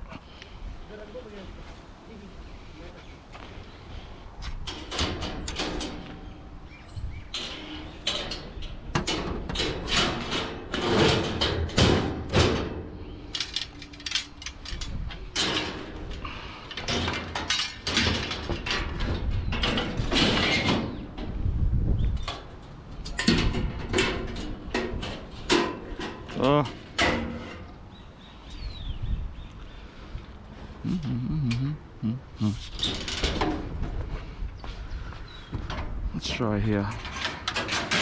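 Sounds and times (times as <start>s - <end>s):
metal scrap clanking and rattling: 4.7s - 6.4s, 7.3s - 21.4s, 22.2s - 27.8s, 32.7s - 33.8s, 36.8s - 38.0s.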